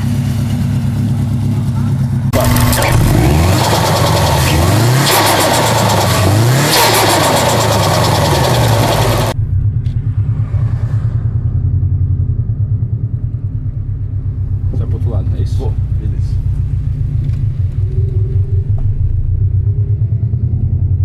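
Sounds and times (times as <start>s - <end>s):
low steady engine rumble: 0.0s - 21.0s
car engine revving: 1.3s - 13.3s.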